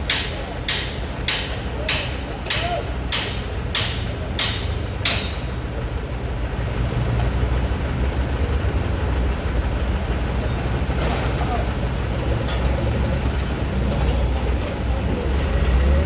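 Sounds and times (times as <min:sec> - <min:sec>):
heavy diesel engine running: 0:00.0 - 0:16.0
sharp knocks: 0:00.1 - 0:05.6.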